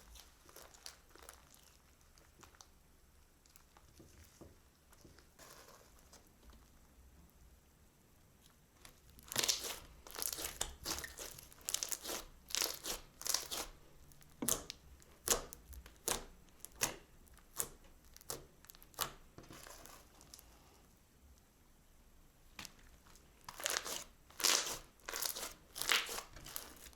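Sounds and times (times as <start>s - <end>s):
crunchy slime being squeezed: 0.0s - 2.7s, 8.8s - 20.4s, 23.4s - 26.9s.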